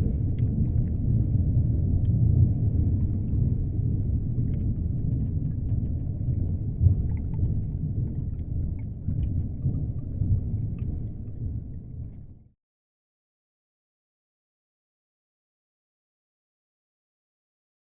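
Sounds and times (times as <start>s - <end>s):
faint clicks and crackles: 0.0s - 12.3s
underwater low rumble: 0.0s - 12.6s.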